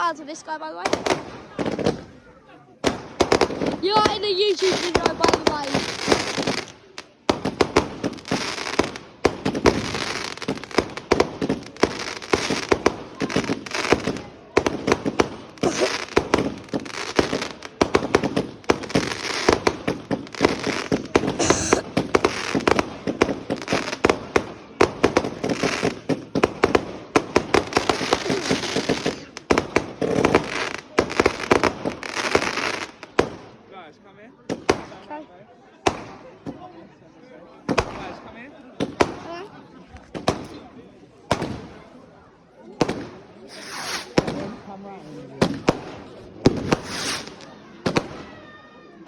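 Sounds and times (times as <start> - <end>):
fireworks bangs and crackles: 0.8 - 33.8, 34.4 - 35.2, 35.8 - 36.8, 37.5 - 48.6.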